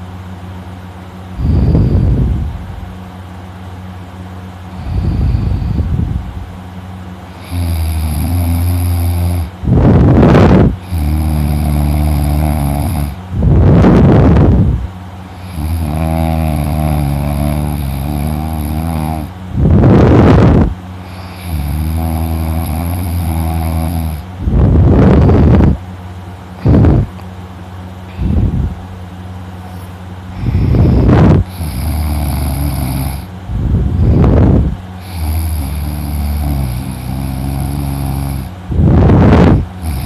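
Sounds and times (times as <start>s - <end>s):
heavy breath into microphone: 1.3s - 2.6s, 4.7s - 6.3s, 28.1s - 28.7s, 29.6s - 31.5s
man snoring loudly: 7.3s - 13.2s, 15.3s - 25.7s, 30.3s - 33.3s, 34.0s - 40.0s.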